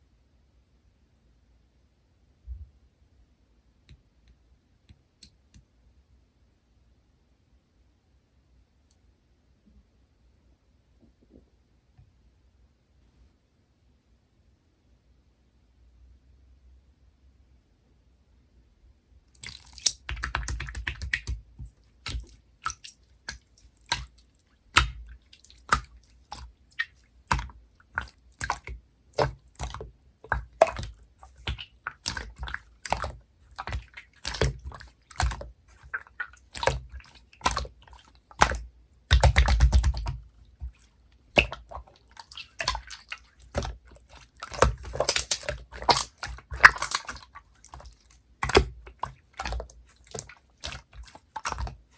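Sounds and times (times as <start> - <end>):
slime squishing by hand: 19.3 - 51.9.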